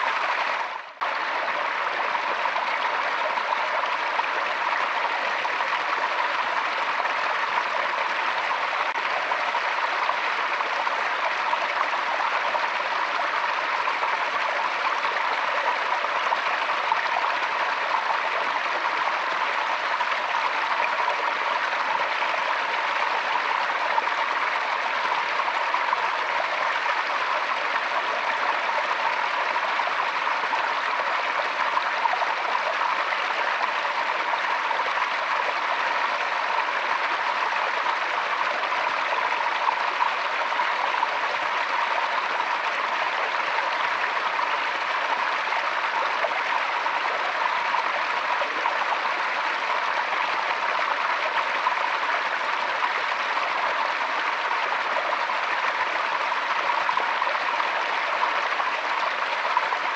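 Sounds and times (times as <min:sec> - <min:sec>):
stream water rushing over stones: 0:00.0 - 0:59.9.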